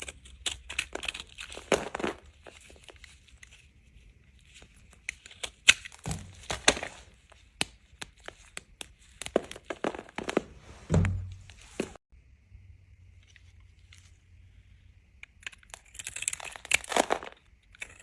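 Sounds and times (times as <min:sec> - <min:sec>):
heavy thuds: 0:10.2 - 0:12.0
knife cracking through soap: 0:15.2 - 0:18.0.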